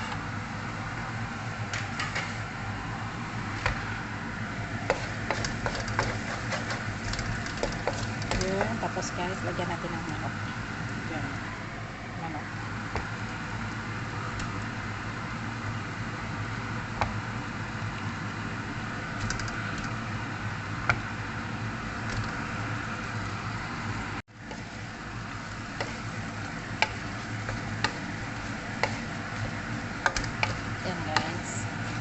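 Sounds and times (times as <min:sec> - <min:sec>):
chicken frying in a pan: 0:12.6 - 0:32.0.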